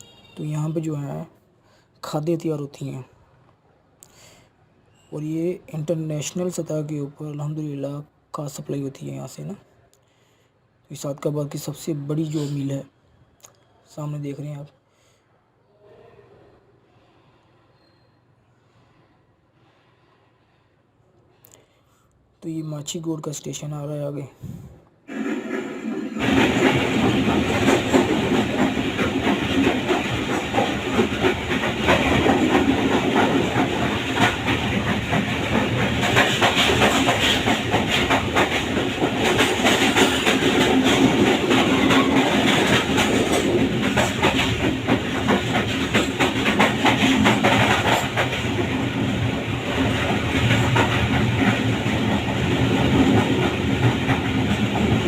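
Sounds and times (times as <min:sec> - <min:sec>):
train wheels on rails: 0:24.4 - 0:55.0
carriages rattling: 0:26.2 - 0:55.0.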